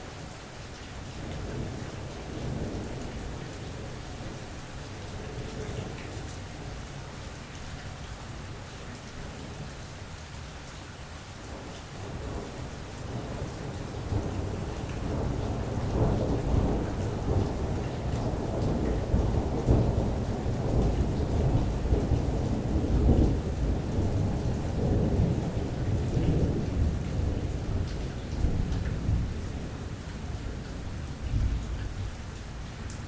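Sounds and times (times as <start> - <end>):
steady rain: 0.0 - 33.0
thunder rumbling: 12.0 - 31.6.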